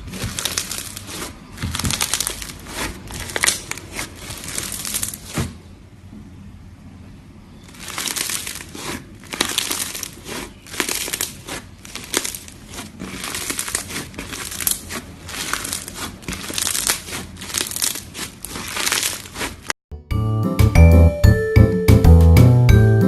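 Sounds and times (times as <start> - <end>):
slime crackling and popping: 0.0 - 5.5, 7.7 - 19.7.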